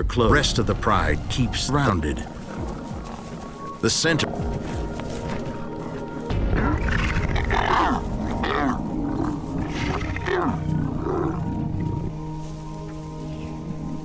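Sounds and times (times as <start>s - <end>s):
background music: 0.0s - 14.0s
lions snarling and growling: 4.6s - 12.3s.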